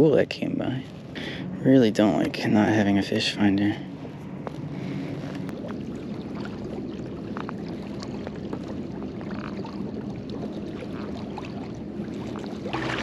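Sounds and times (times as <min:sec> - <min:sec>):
water lapping against kayak hull: 0:00.0 - 0:13.0
small splashes: 0:04.8 - 0:13.0.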